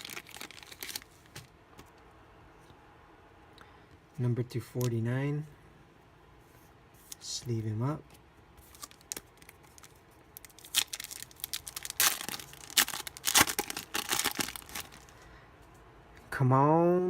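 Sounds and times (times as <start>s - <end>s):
foil wrapper crinkling and tearing: 0.0s - 1.3s, 8.6s - 15.1s.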